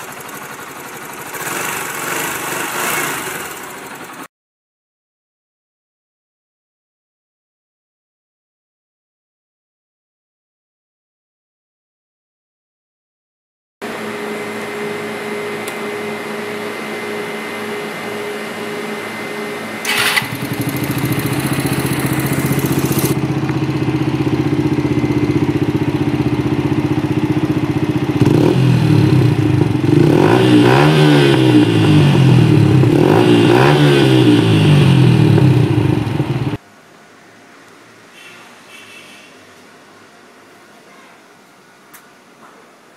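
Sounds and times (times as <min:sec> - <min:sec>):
motorcycle engine idling and revving: 0:00.0 - 0:04.3, 0:13.8 - 0:36.6.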